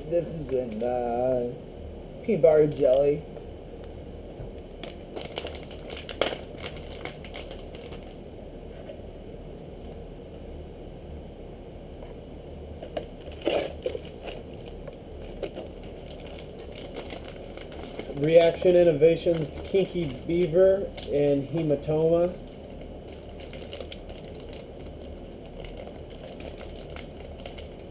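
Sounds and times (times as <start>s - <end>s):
plastic packaging crinkling: 4.8s - 8.2s, 12.8s - 27.9s.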